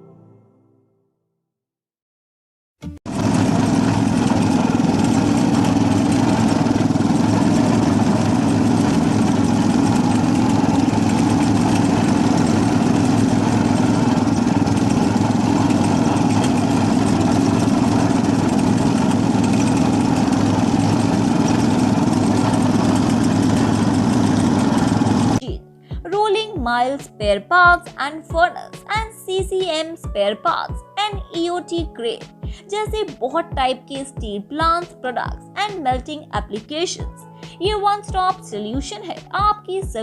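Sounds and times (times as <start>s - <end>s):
vibrator machine humming: 3.1s - 25.6s.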